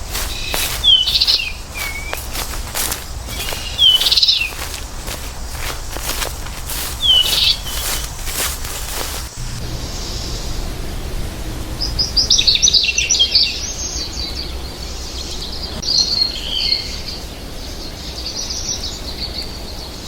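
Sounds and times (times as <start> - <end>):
bird twittering: 0.0 - 5.2, 6.7 - 8.5
low background rumble: 9.3 - 15.8.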